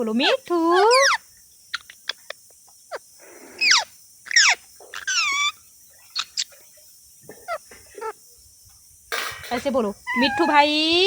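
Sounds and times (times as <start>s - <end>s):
parrot squawking and chirping: 3.6s - 5.6s, 10.0s - 10.6s.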